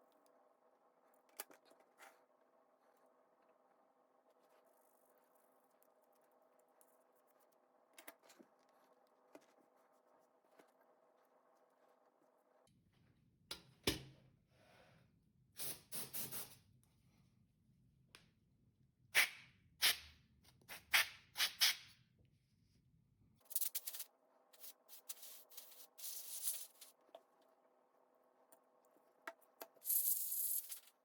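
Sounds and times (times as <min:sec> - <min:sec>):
hands rubbing and scraping laptop parts: 0:23.5 - 0:27.0.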